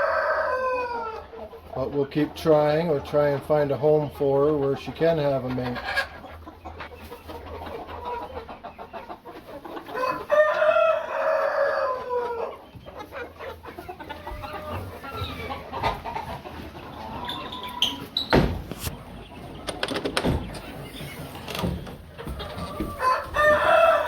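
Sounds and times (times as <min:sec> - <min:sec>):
rooster crowing: 0:00.0 - 0:01.2, 0:10.0 - 0:12.5, 0:22.5 - 0:24.0
chickens clucking: 0:00.0 - 0:24.0.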